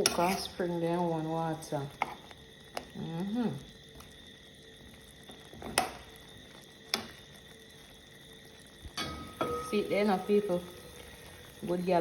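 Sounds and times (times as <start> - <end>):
faint steady hiss: 0.0 - 12.0
utensil tapping cooking pot: 8.9 - 10.8.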